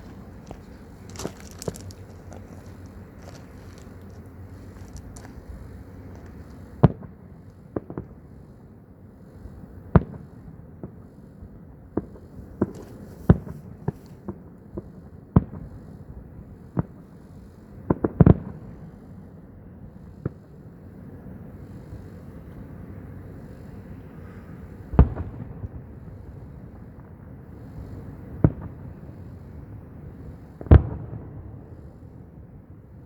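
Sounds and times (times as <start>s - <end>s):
fireworks bangs: 0.0s - 7.1s, 12.0s - 15.7s, 24.9s - 25.9s, 27.7s - 29.4s, 30.6s - 31.8s
low background rumble: 0.0s - 33.0s.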